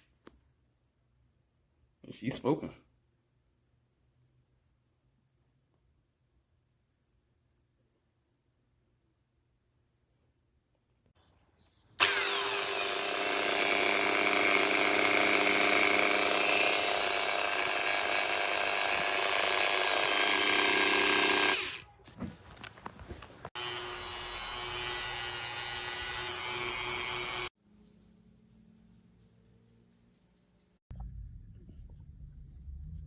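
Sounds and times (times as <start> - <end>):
rotary tool cutting plastic: 12.0 - 21.8.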